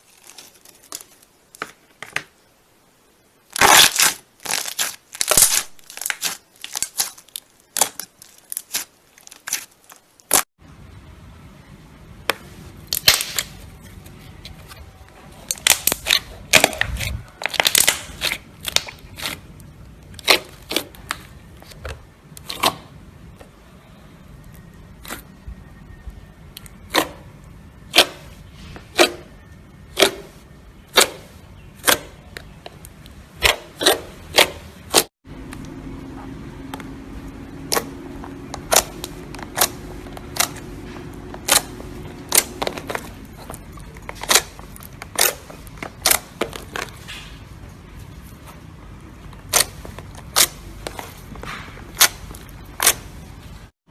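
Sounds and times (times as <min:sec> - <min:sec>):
steady low hum: 0:34.7 - 0:53.8.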